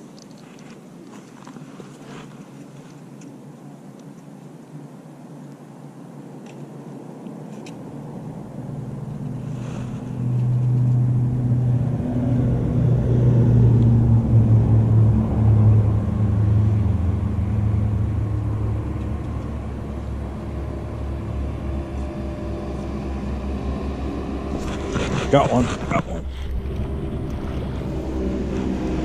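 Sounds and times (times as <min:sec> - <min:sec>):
motorboat engine droning: 0:07.8 - 0:29.0.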